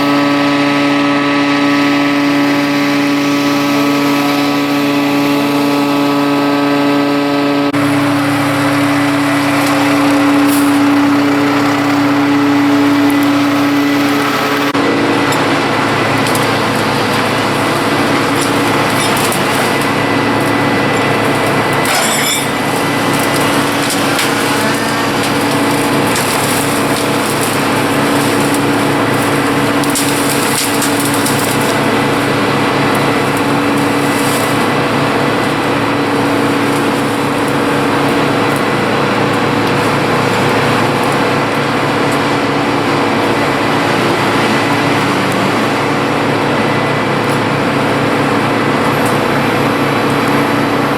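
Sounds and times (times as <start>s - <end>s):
machinery engine running: 0.0s - 50.9s
wood splintering crack: 7.8s - 50.9s.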